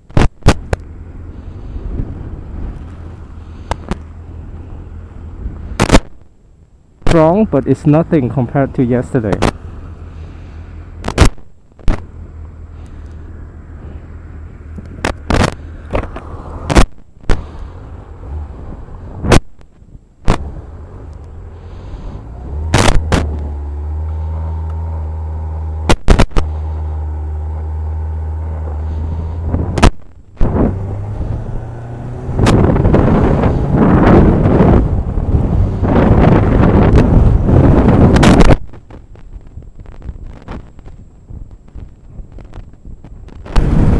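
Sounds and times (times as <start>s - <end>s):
rush of wind noise: 0.0s - 43.9s
wind buffeting microphone: 13.4s - 43.9s
motorcycle engine running: 13.9s - 43.9s.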